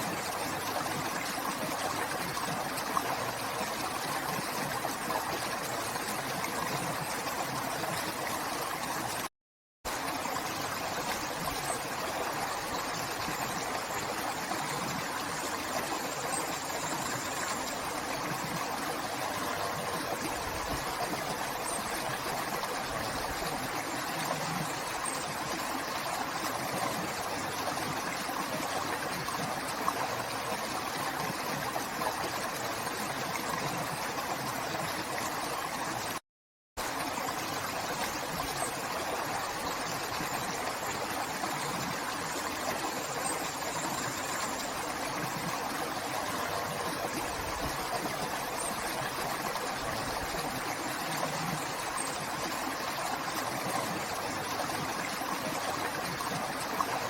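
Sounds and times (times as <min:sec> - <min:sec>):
river water flowing: 0:00.0 - 0:09.3, 0:09.9 - 0:36.2, 0:36.8 - 0:57.0.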